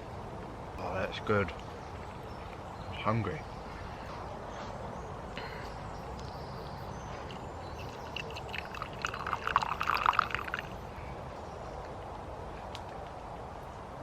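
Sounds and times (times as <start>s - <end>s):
steady background hiss: 0.0s - 14.0s
water splashing and gurgling: 7.7s - 10.9s.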